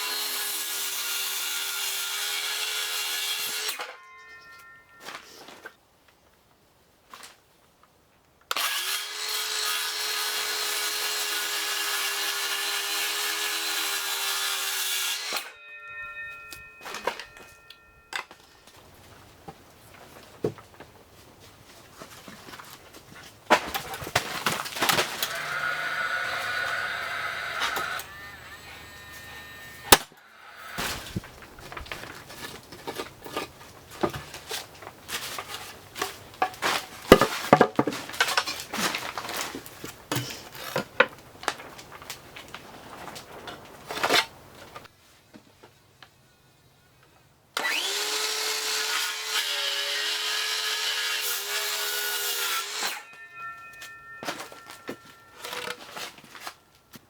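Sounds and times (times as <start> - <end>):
circular saw cutting wood: 0.0 - 4.0, 8.5 - 15.6, 24.7 - 31.2, 47.6 - 53.2, 54.3 - 56.2
wood knocking and clattering: 31.0 - 41.7.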